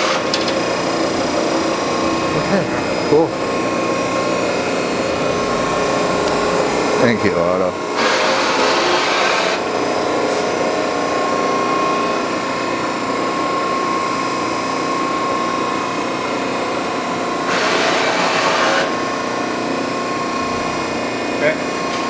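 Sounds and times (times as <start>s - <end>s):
hydraulic pump humming and whining: 0.0s - 22.0s
rushing hydraulic surge: 17.5s - 19.0s.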